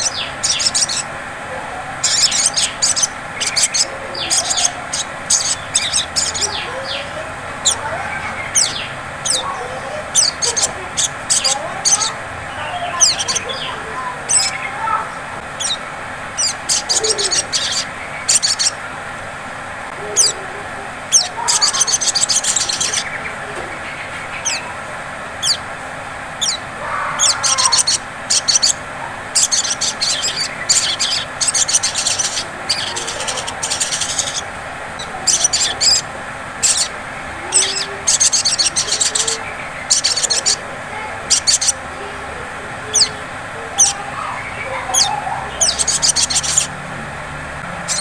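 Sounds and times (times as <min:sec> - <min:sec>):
sharp bird chips: 0:00.0 - 0:01.1, 0:02.0 - 0:14.9, 0:15.6 - 0:18.8, 0:21.1 - 0:23.2, 0:24.0 - 0:24.7, 0:25.4 - 0:25.6, 0:26.4 - 0:36.0, 0:36.6 - 0:40.6, 0:41.3 - 0:41.8, 0:43.8 - 0:46.7
bird trilled chattering: 0:00.0 - 0:01.2, 0:01.9 - 0:18.8, 0:20.1 - 0:20.4, 0:21.0 - 0:25.7, 0:26.3 - 0:41.9, 0:42.7 - 0:46.8.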